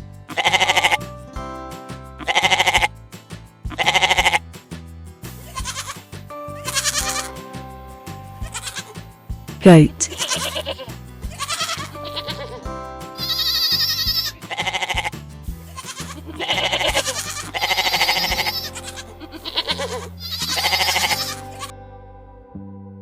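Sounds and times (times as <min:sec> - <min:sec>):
background music: 0:00.0 - 0:23.0
goat bleating: 0:15.7 - 0:21.4.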